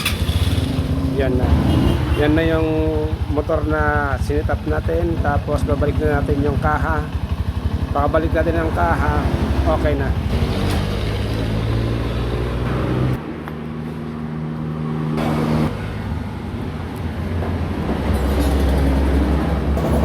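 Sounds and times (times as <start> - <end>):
motorcycle engine running: 0.0 - 12.8, 19.8 - 20.0.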